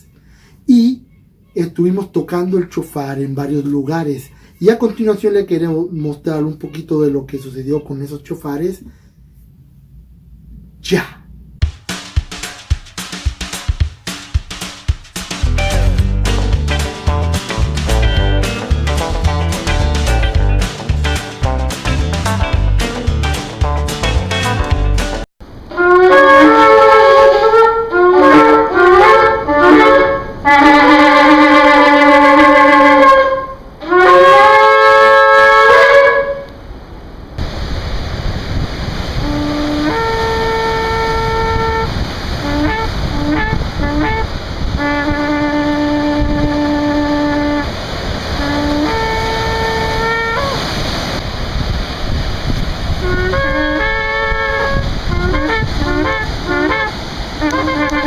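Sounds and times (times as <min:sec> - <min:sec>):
shofar blasts: 0:25.7 - 0:36.6, 0:39.2 - 0:50.9, 0:52.9 - 0:58.0.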